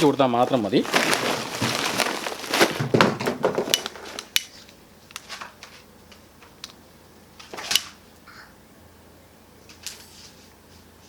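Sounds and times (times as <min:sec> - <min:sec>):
paper bag rustling: 0:00.0 - 0:04.3.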